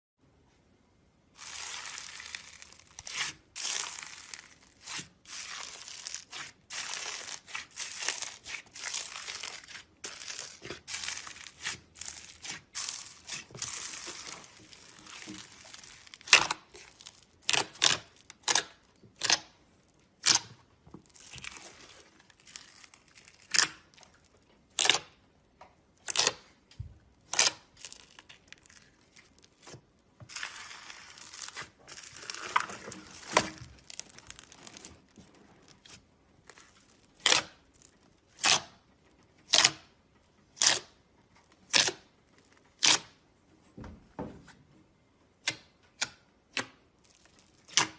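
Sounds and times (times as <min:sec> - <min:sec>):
slime crackling: 0:01.3 - 0:25.2, 0:27.1 - 0:38.8.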